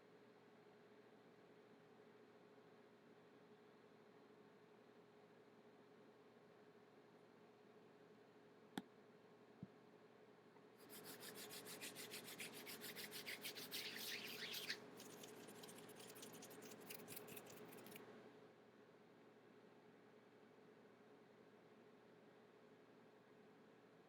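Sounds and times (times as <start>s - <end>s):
hands rubbing together: 10.8s - 18.0s.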